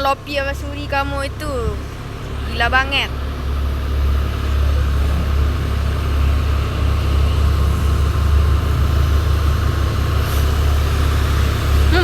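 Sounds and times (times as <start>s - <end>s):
diesel truck engine running: 0.0s - 12.0s.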